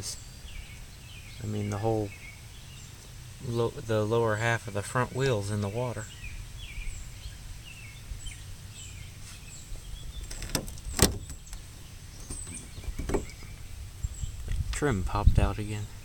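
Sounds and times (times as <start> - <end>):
small birds chirping: 0.0 - 16.0
sharp knocks: 10.2 - 11.5, 12.2 - 13.6.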